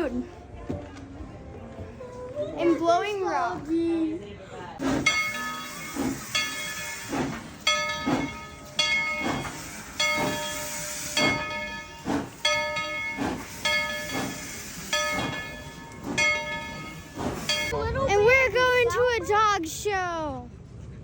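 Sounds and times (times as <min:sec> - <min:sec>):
hissing steam: 0:04.8 - 0:17.7
locomotive bell ringing: 0:04.8 - 0:17.9.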